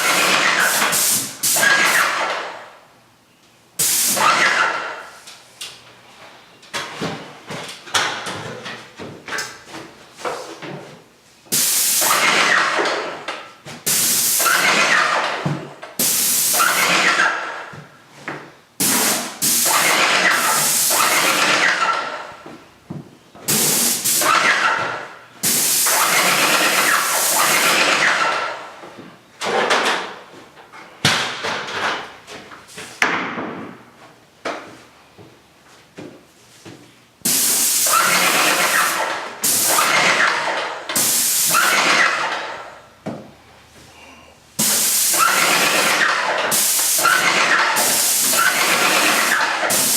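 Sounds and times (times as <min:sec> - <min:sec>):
paint sprayer hissing: 0:00.0 - 0:02.2, 0:03.8 - 0:04.3, 0:11.5 - 0:12.5, 0:13.8 - 0:14.8, 0:16.0 - 0:17.0, 0:18.8 - 0:21.8, 0:23.5 - 0:24.7, 0:25.4 - 0:27.9, 0:37.2 - 0:40.2, 0:41.0 - 0:42.0, 0:44.6 - 0:49.9.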